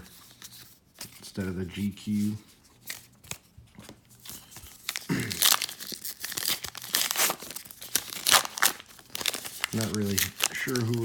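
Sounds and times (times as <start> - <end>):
wrapper crinkling: 4.2 - 11.0.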